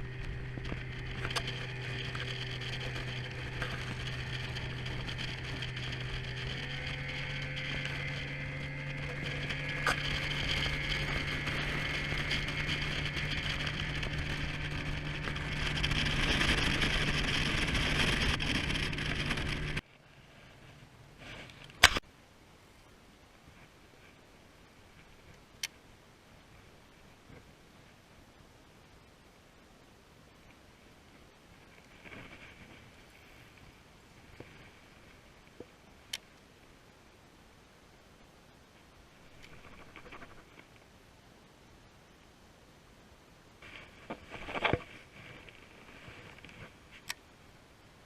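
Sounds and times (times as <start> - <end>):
engine humming: 0.0 - 19.8
sharp click: 21.6 - 22.0.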